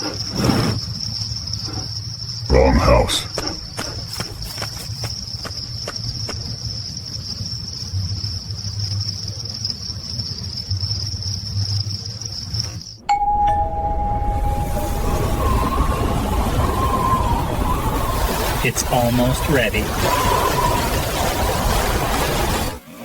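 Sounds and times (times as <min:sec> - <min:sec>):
crickets trilling: 0:00.0 - 0:13.1, 0:14.2 - 0:22.7
low rumble: 0:13.0 - 0:18.8
doorbell chime: 0:13.1 - 0:16.6.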